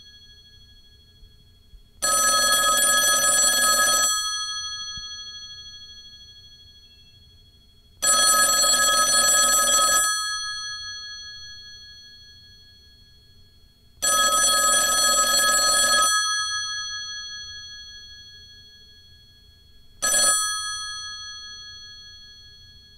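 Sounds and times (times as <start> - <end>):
telephone bell ringing: 2.0 - 6.5, 8.0 - 12.6, 14.0 - 19.0, 20.0 - 22.9.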